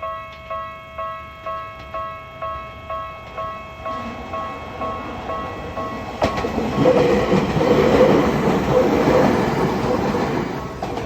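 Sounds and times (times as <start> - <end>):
level crossing warning bell ringing: 0.0 - 7.7
electric train running: 0.5 - 11.0.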